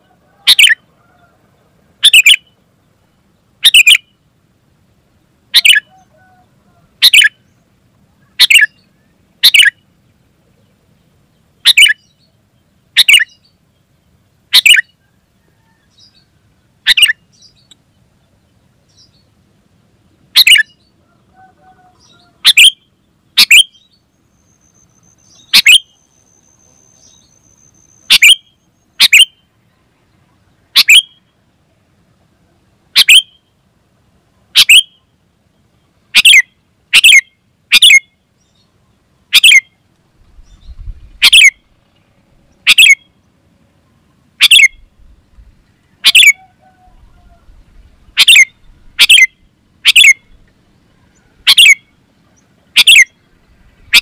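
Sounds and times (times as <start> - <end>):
bulbul calling: 0.0 - 1.3, 2.0 - 2.6, 3.6 - 4.2, 5.5 - 7.6, 8.2 - 9.8, 11.6 - 12.3, 12.9 - 13.6, 14.5 - 17.9, 20.3 - 29.6, 30.7 - 31.3, 32.9 - 33.5, 34.5 - 35.1, 36.1 - 38.7, 39.3 - 43.2, 44.4 - 54.0.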